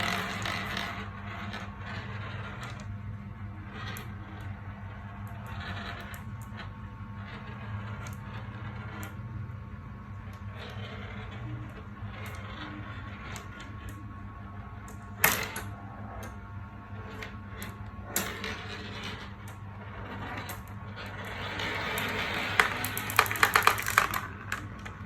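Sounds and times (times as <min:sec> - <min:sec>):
marbles rolling on track: 0:00.0 - 0:09.4, 0:10.1 - 0:25.0.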